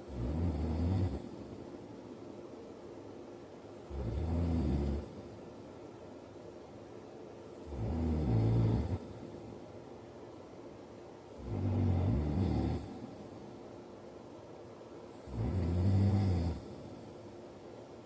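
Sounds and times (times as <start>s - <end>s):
man snoring: 0.1s - 1.3s, 3.9s - 5.2s, 7.6s - 9.2s, 11.4s - 13.2s, 15.2s - 17.1s.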